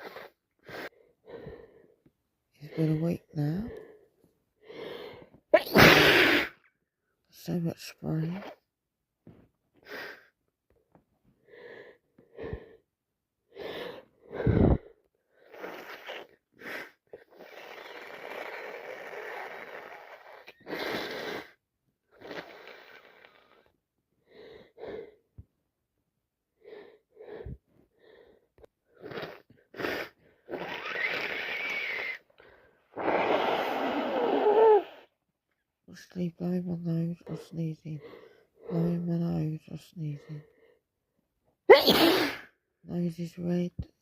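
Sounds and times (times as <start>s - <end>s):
woman blowing her nose: 0.0s - 0.9s, 5.6s - 6.6s, 15.4s - 23.6s, 28.9s - 32.3s, 32.9s - 35.1s, 41.7s - 42.5s
woman sniffing: 0.0s - 0.9s, 32.9s - 35.1s
woman sneezing: 5.6s - 6.6s, 41.7s - 42.5s.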